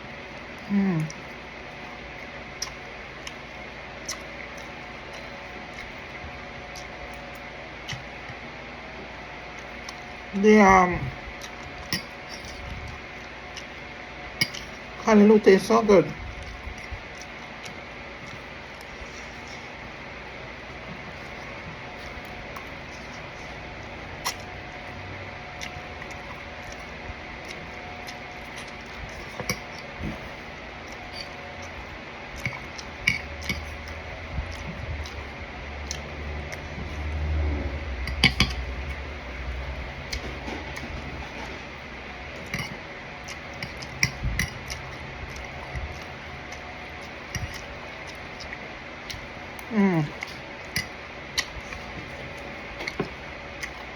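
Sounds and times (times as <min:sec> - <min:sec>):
faint steady hum: 0:00.0 - 0:53.9
low rumbling: 0:34.0 - 0:42.1.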